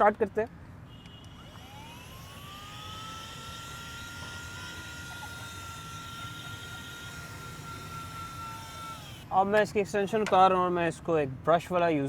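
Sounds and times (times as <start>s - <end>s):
vacuum cleaner motor whine: 1.3s - 9.2s.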